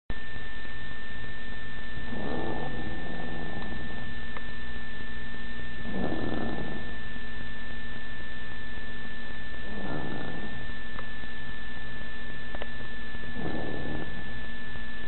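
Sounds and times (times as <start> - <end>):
high-pitched whine: 0.1 - 15.0
steady hum and hiss: 0.1 - 15.0
woman snoring: 2.0 - 4.3, 5.8 - 7.2, 9.6 - 11.0, 13.3 - 14.6.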